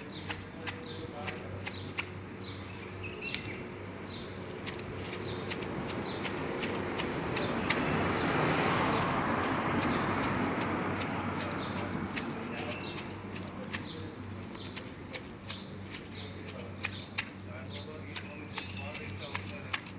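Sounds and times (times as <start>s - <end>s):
bird chirps: 0.0s - 4.4s, 11.4s - 13.1s, 13.7s - 19.6s
garden shears snipping: 0.0s - 19.9s
leafy rustling: 0.0s - 19.9s.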